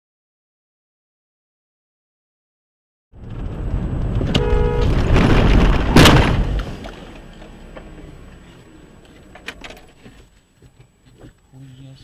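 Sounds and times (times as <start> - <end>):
road noise: 3.1 - 12.0
car crash impact: 3.2 - 8.0
car horn: 4.2 - 5.2.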